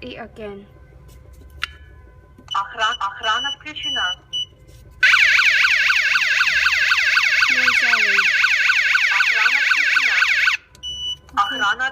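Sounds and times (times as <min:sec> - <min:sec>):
electronic warbling siren: 0:05.0 - 0:10.7.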